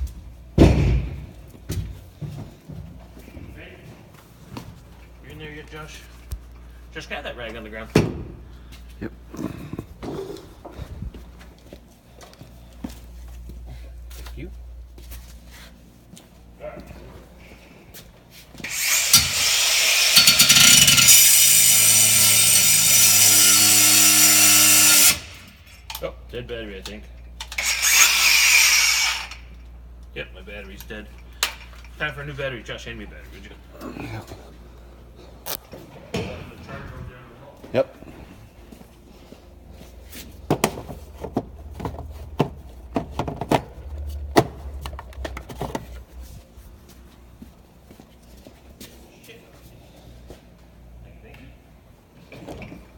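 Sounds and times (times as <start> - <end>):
angle grinder cutting wood: 18.6 - 25.6, 27.6 - 29.5.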